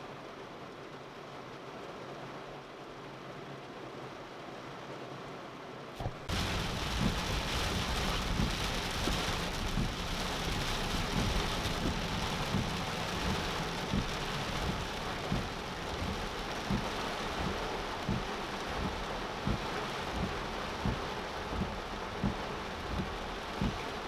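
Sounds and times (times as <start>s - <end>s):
low thumps: 6.0s - 8.7s
heavy rain hissing: 6.0s - 24.0s.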